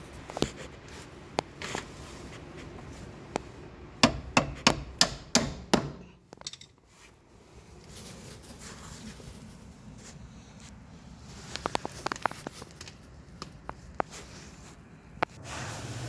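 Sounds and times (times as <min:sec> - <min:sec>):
hammer blows: 0:04.0 - 0:06.2.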